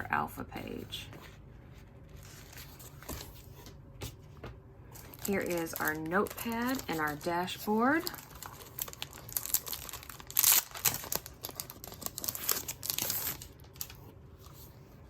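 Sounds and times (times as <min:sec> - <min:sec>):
packaging crinkling and rustling: 0:04.9 - 0:14.8.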